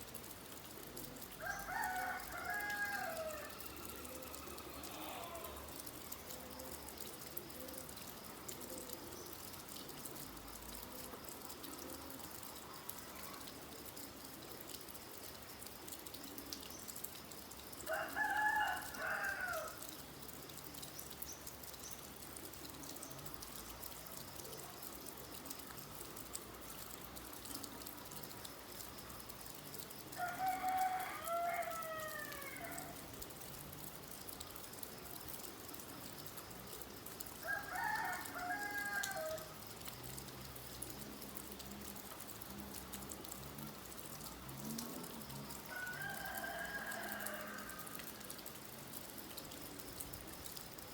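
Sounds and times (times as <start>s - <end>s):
rain hissing: 0.0s - 50.9s
rooster crowing: 1.4s - 5.8s, 17.9s - 19.8s, 30.2s - 33.0s, 37.4s - 39.5s, 45.7s - 48.3s.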